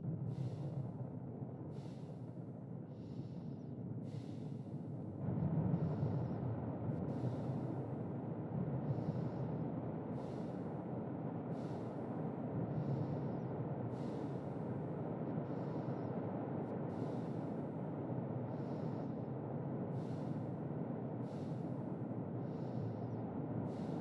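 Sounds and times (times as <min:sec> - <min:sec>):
sleeping person breathing: 0:01.7 - 0:02.3, 0:02.9 - 0:04.9, 0:07.1 - 0:07.8, 0:10.1 - 0:10.8, 0:11.5 - 0:16.1, 0:16.9 - 0:17.8, 0:18.4 - 0:19.3, 0:19.9 - 0:20.6, 0:21.2 - 0:24.0
low rumble of storm: 0:05.0 - 0:24.0.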